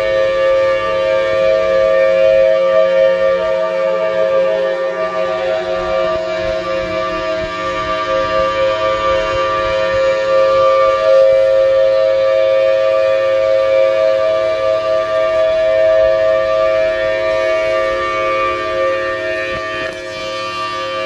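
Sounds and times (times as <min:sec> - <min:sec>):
emergency warning siren: 0:00.0 - 0:21.0.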